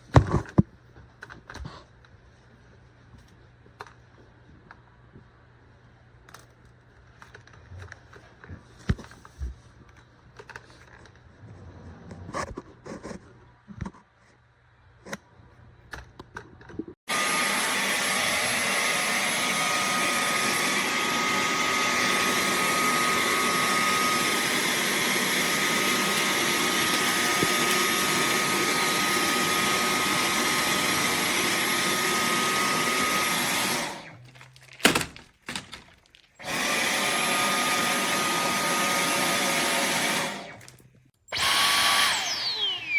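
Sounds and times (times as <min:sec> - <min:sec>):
cordless vacuum whining: 0:17.1 - 0:42.9
handling clicks and knocks: 0:34.2 - 0:36.4.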